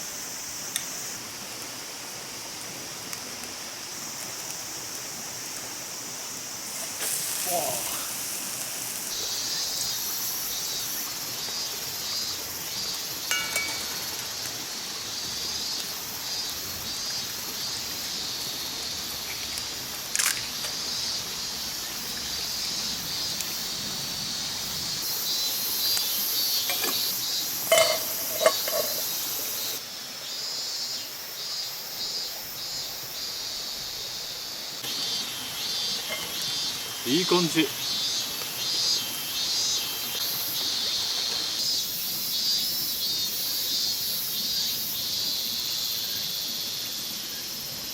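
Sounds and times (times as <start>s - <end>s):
food sizzling in a pan: 0.0s - 47.9s
utensil clinking: 13.3s - 14.6s, 26.7s - 27.1s, 27.7s - 29.2s, 36.0s - 36.4s.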